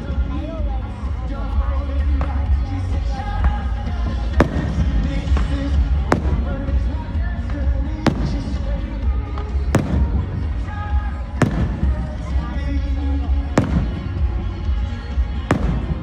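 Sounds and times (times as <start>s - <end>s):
crowd voices: 0.0s - 16.0s
music with singing: 0.0s - 16.0s
firework shells bursting: 4.3s - 7.3s, 8.0s - 16.0s.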